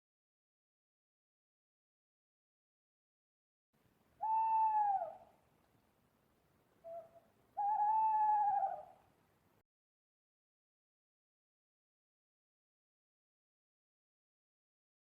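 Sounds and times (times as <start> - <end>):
owl hooting: 4.2 - 5.3, 6.8 - 9.0.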